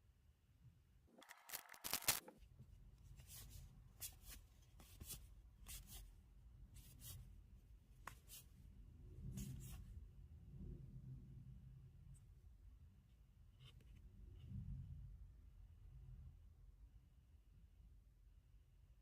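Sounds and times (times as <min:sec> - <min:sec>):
trading cards rustling: 0:01.2 - 0:02.4.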